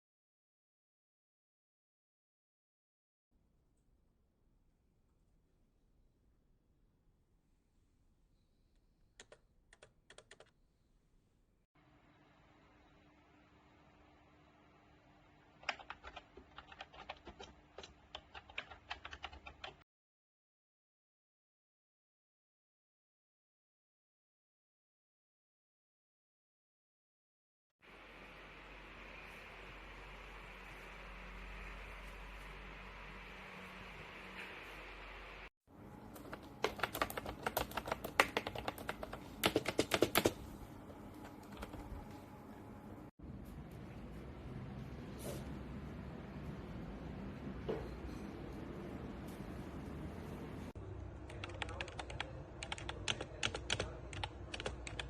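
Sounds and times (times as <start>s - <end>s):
keyboard typing clicks: 9.2s - 10.5s, 15.6s - 19.8s, 36.1s - 40.5s, 41.2s - 42.1s, 51.3s - 55.0s.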